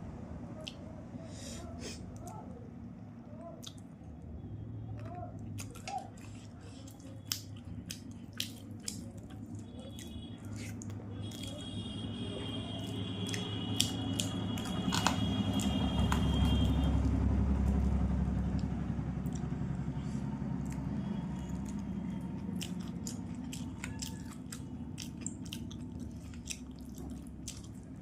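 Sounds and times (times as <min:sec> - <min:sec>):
lip smacks and mouth clicks: 0:03.6 - 0:03.9, 0:05.0 - 0:11.6, 0:12.8 - 0:16.2, 0:17.7 - 0:19.6, 0:20.6 - 0:27.8
wet chewing: 0:05.0 - 0:19.9, 0:20.6 - 0:28.0.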